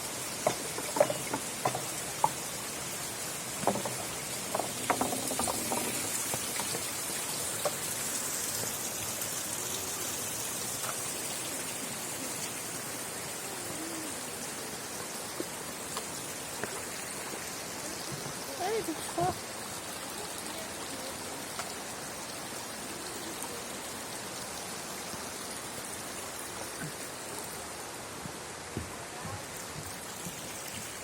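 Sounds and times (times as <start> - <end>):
steady rushing hiss: 0.0 - 31.0
balls clicking on wooden marble run: 3.7 - 6.1.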